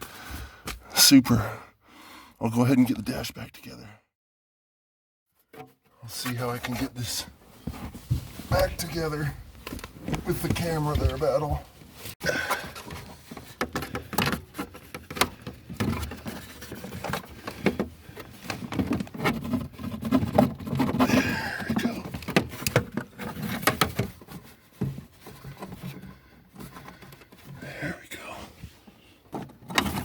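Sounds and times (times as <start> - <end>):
parts clicking and knocking: 12.5 - 27.6.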